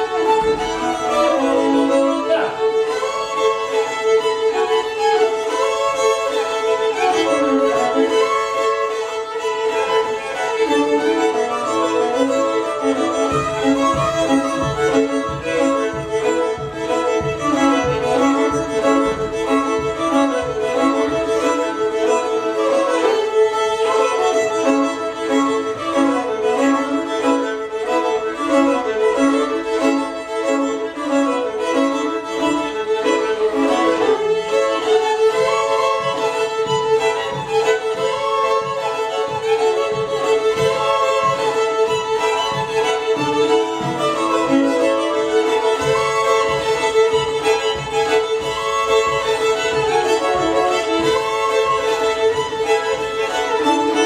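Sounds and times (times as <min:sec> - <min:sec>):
fiddle tune with drone: 0:00.0 - 0:54.0
low regular beat: 0:11.0 - 0:22.0.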